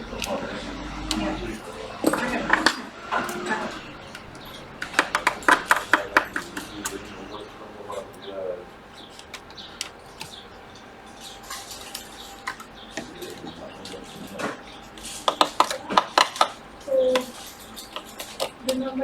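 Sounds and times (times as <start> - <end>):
small hard objects clicking: 4.1 - 7.2, 9.1 - 19.0.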